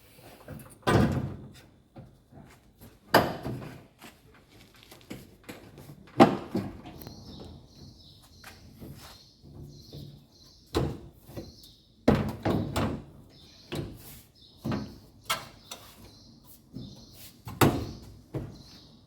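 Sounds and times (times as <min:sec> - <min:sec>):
sheet metal clunks and knocks: 0:12.1 - 0:13.1.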